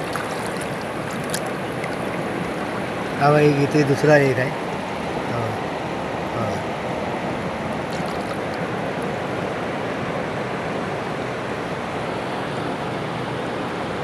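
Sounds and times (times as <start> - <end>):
surf washing over rocks: 0.0 - 10.0.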